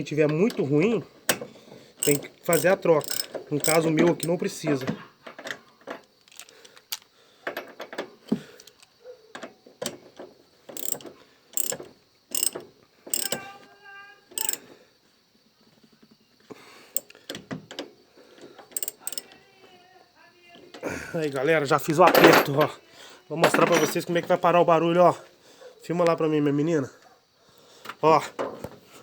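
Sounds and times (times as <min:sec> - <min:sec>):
hand tool metallic clicks: 0:02.0 - 0:04.4, 0:10.8 - 0:13.4, 0:14.4 - 0:14.6, 0:18.8 - 0:19.3.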